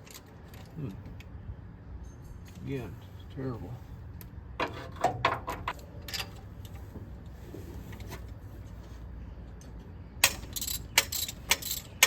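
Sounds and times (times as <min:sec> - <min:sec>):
metal tools clinking: 0:10.3 - 0:12.0.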